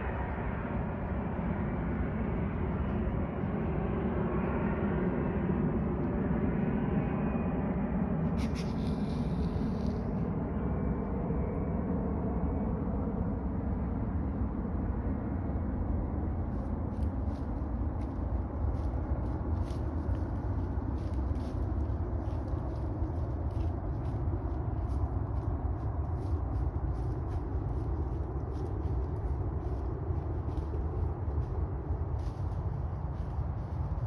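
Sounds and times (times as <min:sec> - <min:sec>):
distant traffic rumble: 0:08.4 - 0:10.3, 0:16.0 - 0:34.0.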